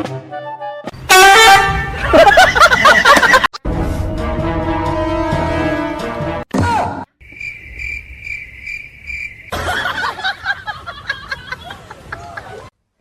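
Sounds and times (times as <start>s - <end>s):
cricket-like pulsing chirp: 7.2s - 9.6s.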